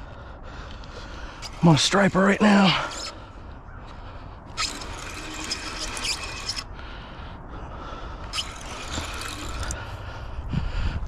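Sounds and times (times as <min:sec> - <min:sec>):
fishing reel ratcheting: 0:04.5 - 0:06.7, 0:08.3 - 0:09.8.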